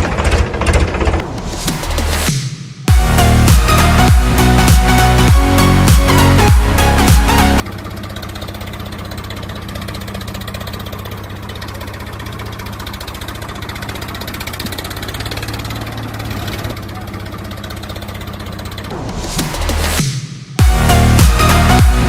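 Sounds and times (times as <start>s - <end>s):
diesel tractor engine idling: 2.9s - 20.0s.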